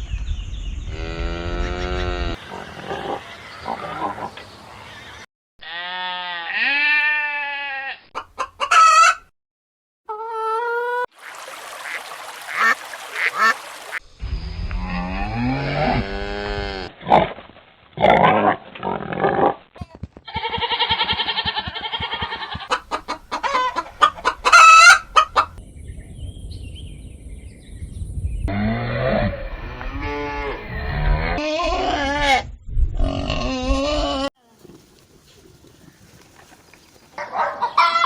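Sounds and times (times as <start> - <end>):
chickens clucking: 1.6 - 4.6, 8.2 - 9.2, 20.3 - 25.6, 34.6 - 38.0
geese honking: 11.8 - 14.0, 20.7 - 25.5.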